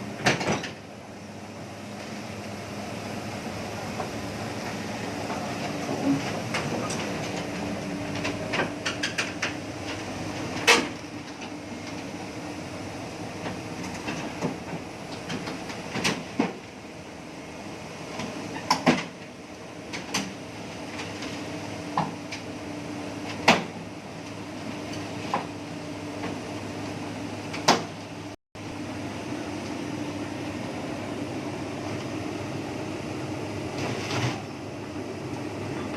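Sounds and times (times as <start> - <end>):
excavator engine running: 0.0 - 18.5.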